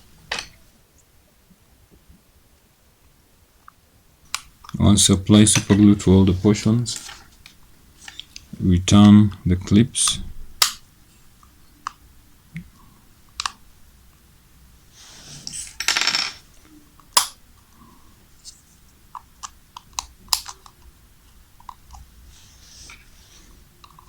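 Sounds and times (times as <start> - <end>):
rustling handling noise: 4.4 - 9.4.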